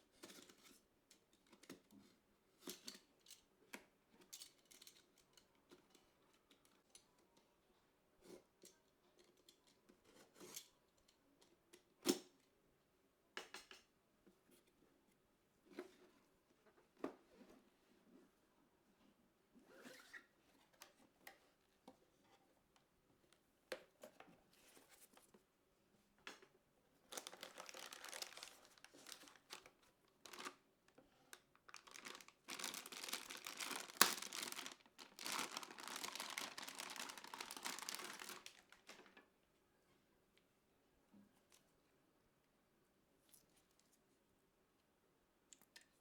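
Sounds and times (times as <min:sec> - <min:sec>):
packaging rustling and crinkling: 0:27.1 - 0:30.6, 0:31.3 - 0:39.2.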